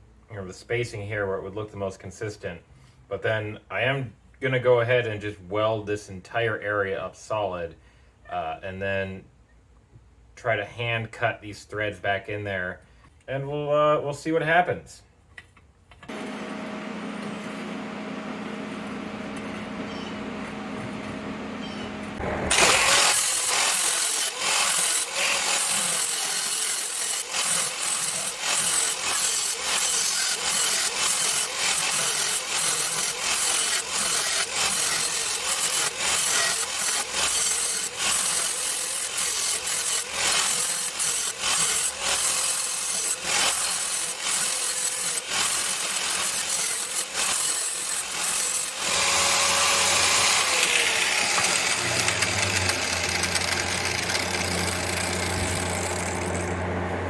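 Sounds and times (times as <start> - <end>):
welding arc crackling: 22.2 - 56.6.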